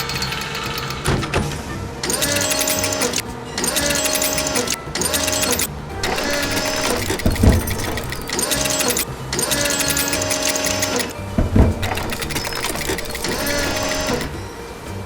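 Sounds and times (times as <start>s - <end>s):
fast mechanical clicking: 0.0s - 14.4s
low thump: 11.3s - 12.2s.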